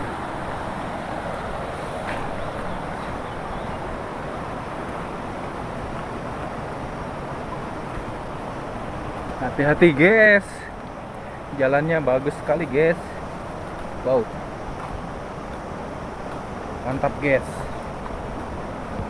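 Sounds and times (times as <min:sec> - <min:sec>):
wind on microphone: 0:12.8 - 0:19.0.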